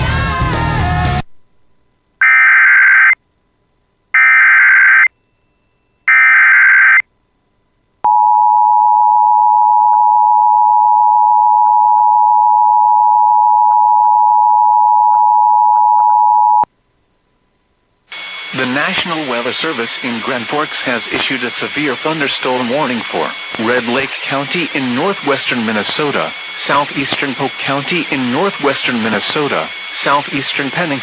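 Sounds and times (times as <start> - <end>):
warbling digital data screech: 18.2 - 31.0.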